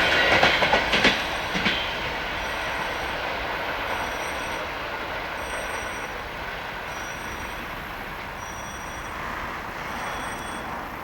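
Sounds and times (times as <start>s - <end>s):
electric train rushing past: 0.0s - 11.0s.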